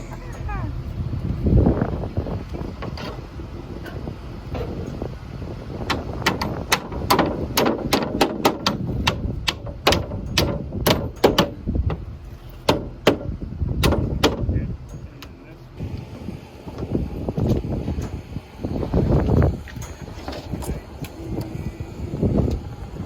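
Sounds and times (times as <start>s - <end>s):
nails hammered into wood: 5.9s - 11.6s, 12.7s - 14.5s.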